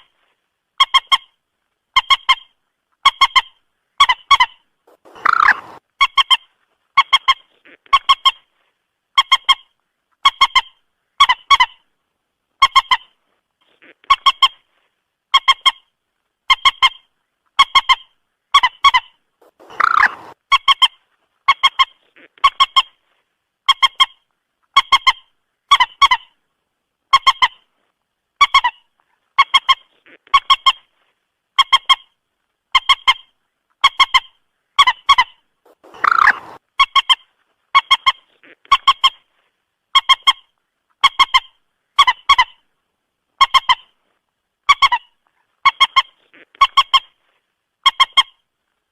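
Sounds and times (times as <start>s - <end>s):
longer lower moorhen calls: 2.0s - 6.4s, 17.6s - 23.0s, 32.8s - 37.2s
moorhen honking calls: 4.4s - 5.8s, 19.4s - 20.4s, 35.7s - 36.6s.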